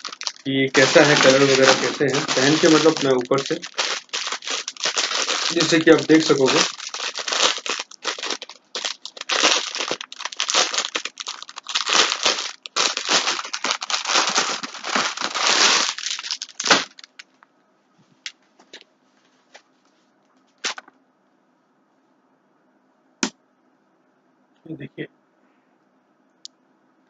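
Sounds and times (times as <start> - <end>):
shirt rustling and crinkling: 0.0 - 17.3.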